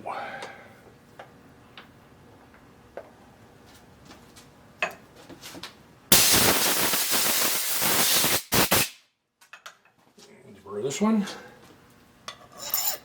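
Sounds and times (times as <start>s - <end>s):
loud hiss bursts: 6.1s - 9.0s.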